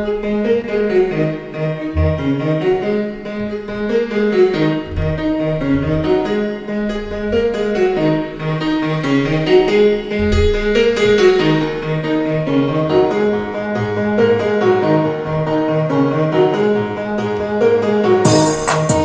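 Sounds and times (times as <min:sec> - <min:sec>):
instrumental beat with piano and strings: 0:00.0 - 0:19.0
low bass notes: 0:01.7 - 0:08.1.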